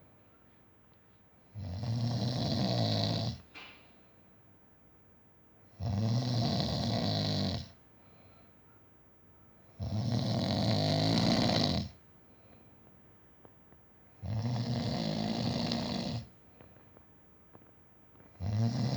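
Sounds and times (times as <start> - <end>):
man snoring loudly: 1.6 - 3.4, 5.8 - 7.7, 9.8 - 11.9, 14.2 - 16.3, 18.4 - 18.9.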